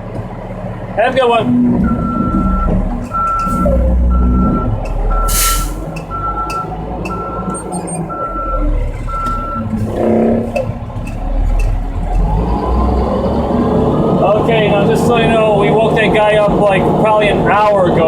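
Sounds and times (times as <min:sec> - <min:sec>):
engine running: 0:00.0 - 0:18.0
truck reversing alarm beeping: 0:01.4 - 0:11.7
loud air hiss: 0:05.3 - 0:05.9.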